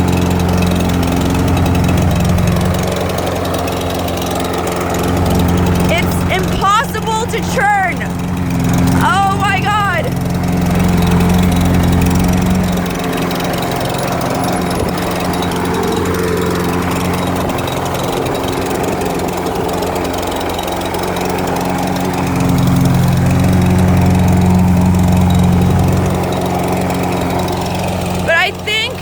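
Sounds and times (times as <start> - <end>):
lawn mower engine running: 0.0 - 29.0.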